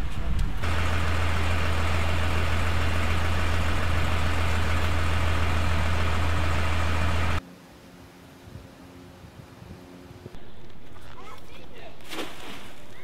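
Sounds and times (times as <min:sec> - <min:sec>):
engine idling: 0:00.4 - 0:07.4.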